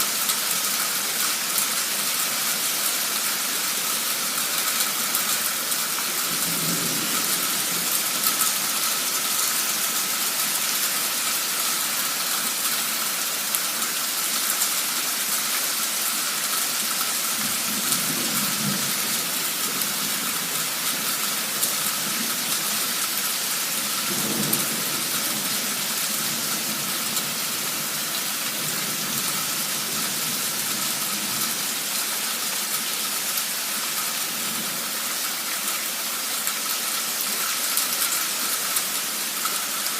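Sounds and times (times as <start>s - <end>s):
heavy rain hissing: 0.0s - 39.9s
low thunder rumbles: 6.2s - 8.6s, 17.4s - 20.7s, 23.9s - 30.3s.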